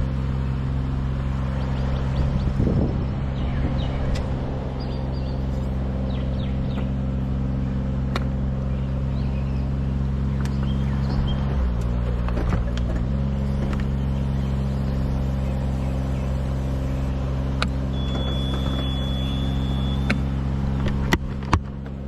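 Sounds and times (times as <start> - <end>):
engine idling: 0.0 - 22.0
faint birds chirping: 1.2 - 11.8, 13.6 - 20.2.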